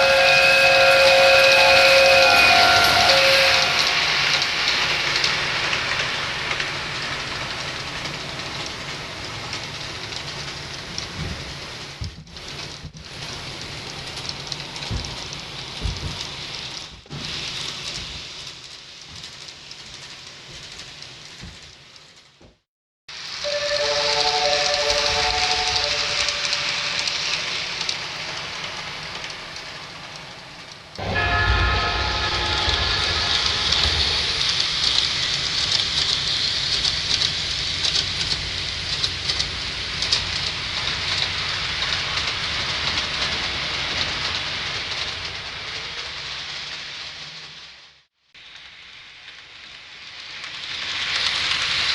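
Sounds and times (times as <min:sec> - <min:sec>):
train horn blast: 0:00.0 - 0:05.4, 0:23.4 - 0:28.4, 0:31.0 - 0:35.2
train rushing rumble: 0:00.0 - 0:22.1, 0:23.1 - 0:51.9.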